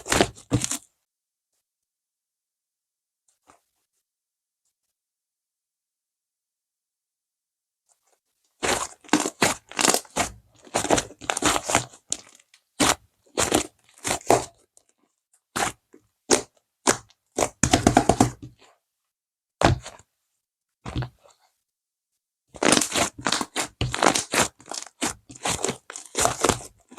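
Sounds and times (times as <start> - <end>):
slime crackling and crunching: 0.0 - 0.8, 8.6 - 14.6, 22.6 - 26.9.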